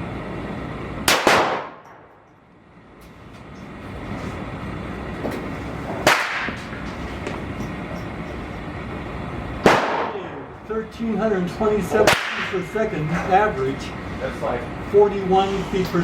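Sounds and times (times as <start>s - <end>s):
shotgun firing: 1.1s - 2.1s, 6.0s - 6.6s, 9.6s - 10.2s, 12.1s - 12.5s.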